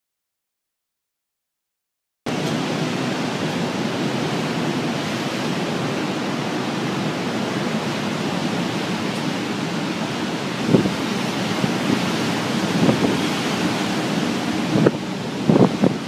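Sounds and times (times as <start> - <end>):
hurricane wind: 2.3 - 16.0
surf rushing: 2.3 - 16.0.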